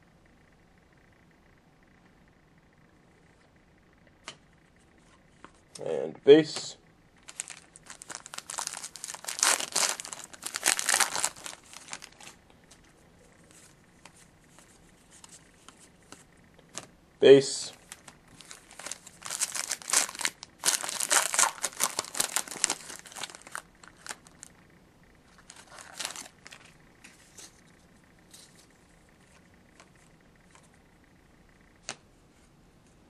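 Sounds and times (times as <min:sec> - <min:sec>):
foil wrapper crinkling: 0:07.2 - 0:12.4, 0:17.8 - 0:24.5, 0:25.3 - 0:27.6
cards rustling: 0:07.2 - 0:16.9, 0:17.7 - 0:24.6, 0:25.3 - 0:30.8.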